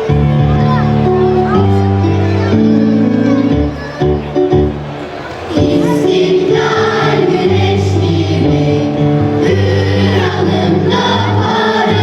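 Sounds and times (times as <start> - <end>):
instrumental music: 0.0 - 12.0
choir singing: 5.5 - 12.0.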